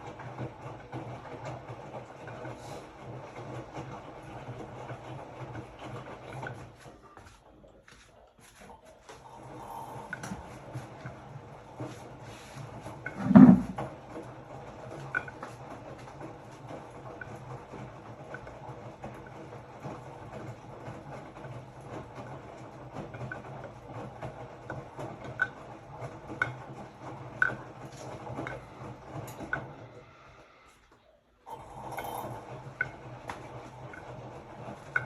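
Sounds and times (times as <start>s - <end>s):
washing machine motor humming: 0.0s - 35.0s
laundry tumbling in drum: 10.4s - 29.1s.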